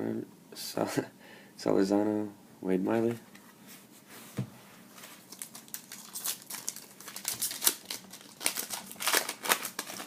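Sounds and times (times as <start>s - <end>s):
foil wrapper crinkling and tearing: 5.3s - 10.0s.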